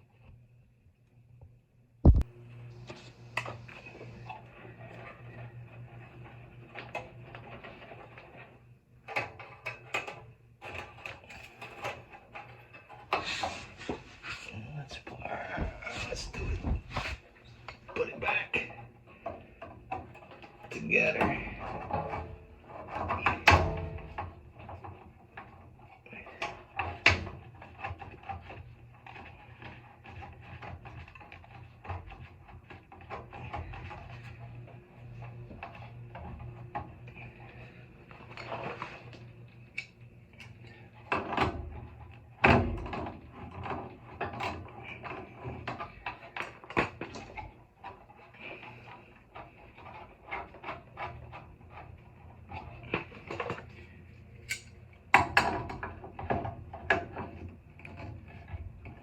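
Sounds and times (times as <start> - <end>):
faint low hum: 0.0 - 26.9.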